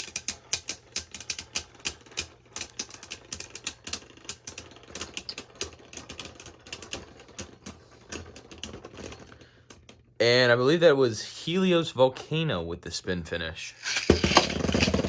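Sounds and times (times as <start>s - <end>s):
spinning tops clashing: 13.8s - 15.0s.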